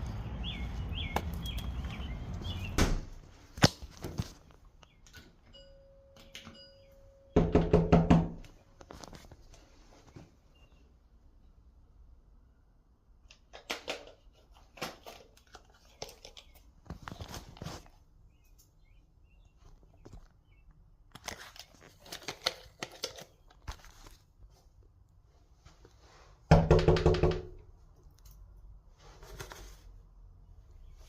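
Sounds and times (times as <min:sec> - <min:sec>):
rustling and crinkling handling noises: 0:00.0 - 0:05.0, 0:08.5 - 0:10.9, 0:14.1 - 0:26.4, 0:27.9 - 0:31.0.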